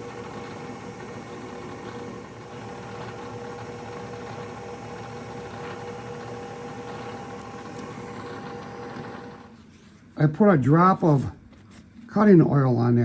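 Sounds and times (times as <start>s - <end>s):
router spindle whine: 0.0s - 9.6s.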